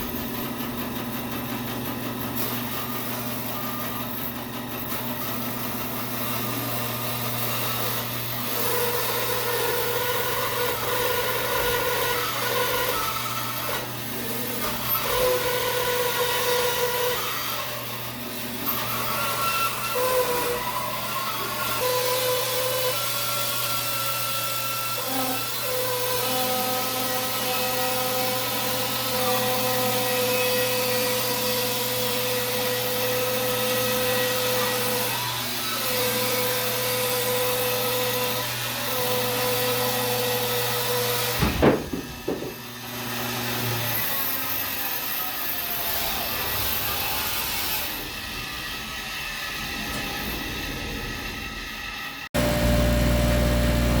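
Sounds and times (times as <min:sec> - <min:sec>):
bandsaw cutting through log: 0:00.0 - 0:50.6
sharp knock: 0:41.4 - 0:42.6.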